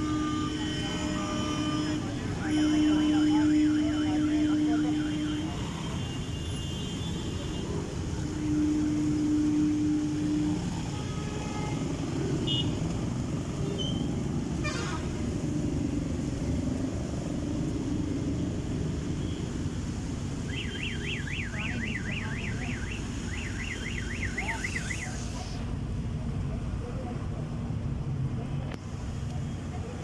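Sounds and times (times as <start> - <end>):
horn-like tone: 0.0 - 15.2
street traffic rumble: 0.0 - 30.0
car alarm warbling: 20.5 - 25.6.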